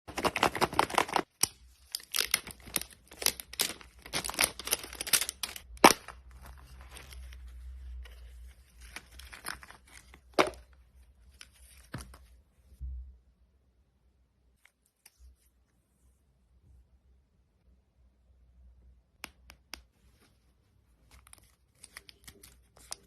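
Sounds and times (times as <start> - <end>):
packaging tearing and crinkling: 0.1 - 6.2.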